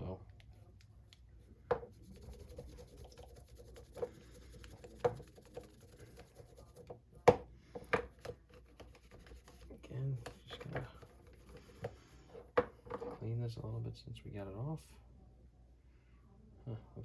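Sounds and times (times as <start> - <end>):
light scratching and rubbing: 1.4 - 7.0, 8.1 - 13.4.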